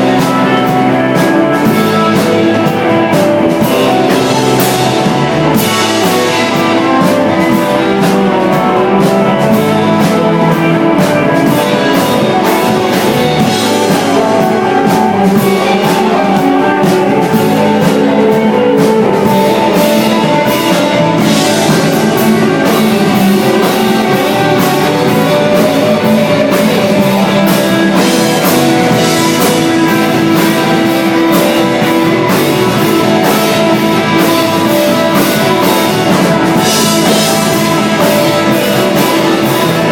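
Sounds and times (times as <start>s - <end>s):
cymbals and drums: 0.0s - 39.9s
live rock band playing: 0.0s - 39.9s.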